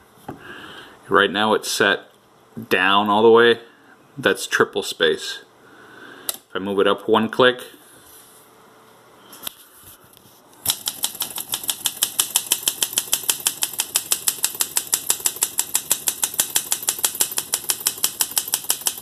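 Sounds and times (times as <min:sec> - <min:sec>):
typewriter key strikes: 0:10.7 - 0:19.0.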